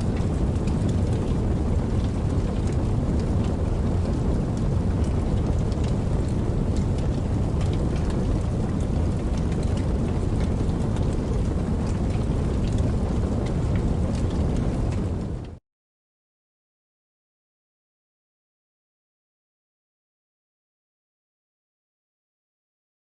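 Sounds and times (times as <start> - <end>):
rain falling: 0.0 - 15.6.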